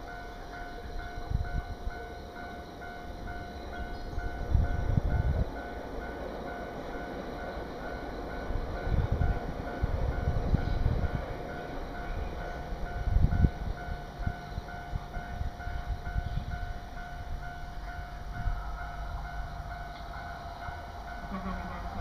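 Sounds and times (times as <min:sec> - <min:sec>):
train rumbling past on rails: 0:00.0 - 0:22.0.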